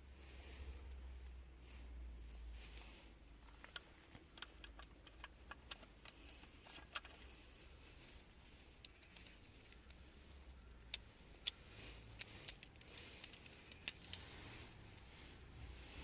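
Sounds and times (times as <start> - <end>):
metal objects clicking and clinking: 10.7 - 14.2.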